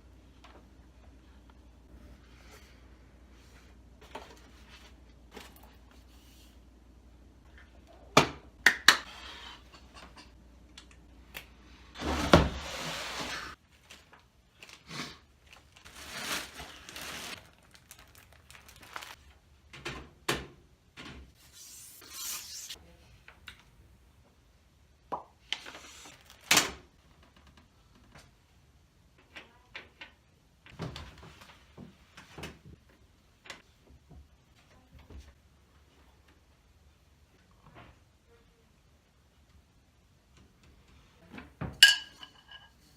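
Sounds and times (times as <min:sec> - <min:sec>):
packaging rustling and sliding: 0:15.5 - 0:19.2.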